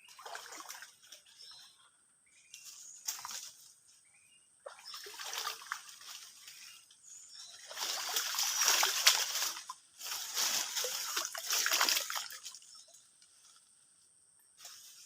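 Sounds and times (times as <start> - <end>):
water splashing and sloshing: 0.0 - 1.4, 4.6 - 13.0.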